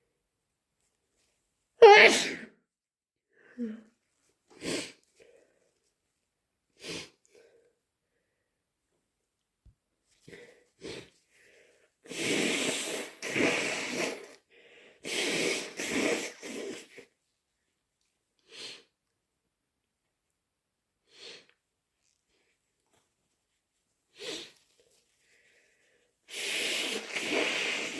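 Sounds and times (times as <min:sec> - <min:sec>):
person sniffing: 0:04.5 - 0:05.1, 0:06.8 - 0:07.6, 0:10.3 - 0:17.2, 0:18.4 - 0:19.0, 0:21.0 - 0:21.6, 0:24.1 - 0:27.9
wet nose blowing expulsions: 0:04.6 - 0:05.0, 0:10.8 - 0:11.2, 0:12.0 - 0:17.2, 0:24.1 - 0:24.9, 0:26.3 - 0:27.9.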